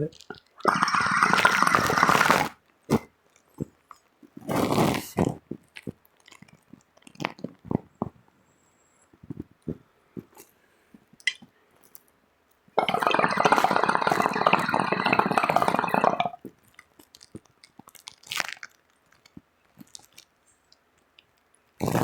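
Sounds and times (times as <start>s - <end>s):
water bubbling in a bong: 0.0s - 2.5s, 12.8s - 16.4s.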